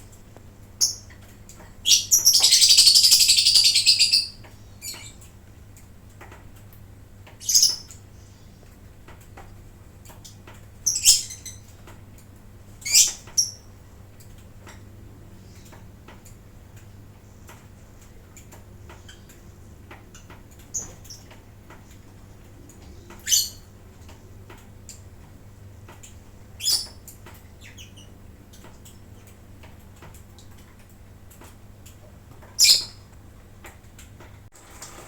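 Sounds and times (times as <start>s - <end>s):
birds squawking shrilly: 1.9s - 5.0s.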